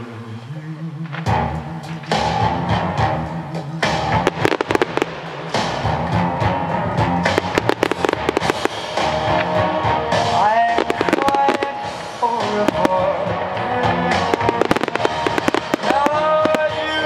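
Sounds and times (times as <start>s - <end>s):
music: 0.0s - 17.0s
fireworks bangs and crackles: 3.8s - 17.0s.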